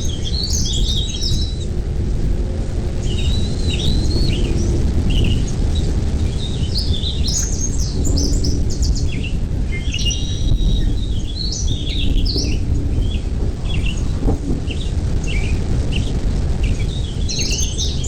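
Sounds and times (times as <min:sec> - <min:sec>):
birds chirping: 0:00.0 - 0:18.0
steady low rumble: 0:00.0 - 0:18.0.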